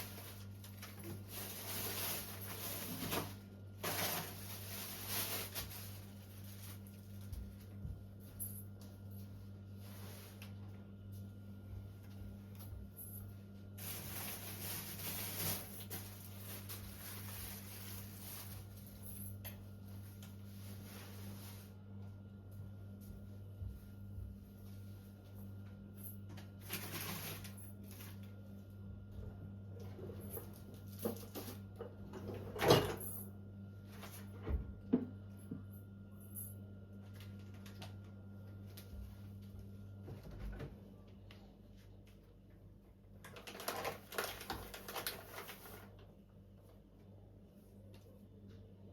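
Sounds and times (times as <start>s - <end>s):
rustling handling noises: 0.0s - 28.6s, 43.2s - 48.6s
steady low hum: 0.0s - 43.1s.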